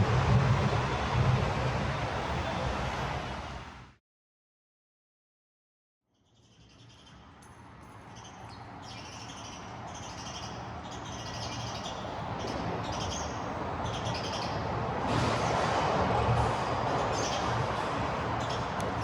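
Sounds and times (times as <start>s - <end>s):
low city hum: 0.0s - 4.0s, 6.2s - 19.0s
small birds chirping: 6.1s - 14.7s, 17.1s - 17.5s.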